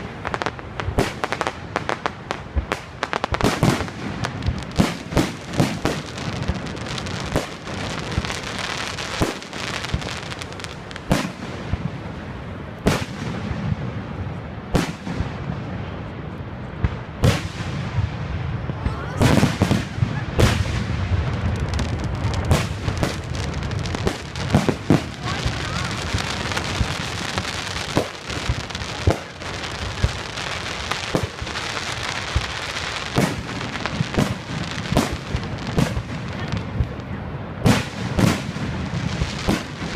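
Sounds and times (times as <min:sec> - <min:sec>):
fireworks bursting with sharp bangs: 0:00.0 - 0:39.9
rushing crackling noise: 0:15.3 - 0:39.9.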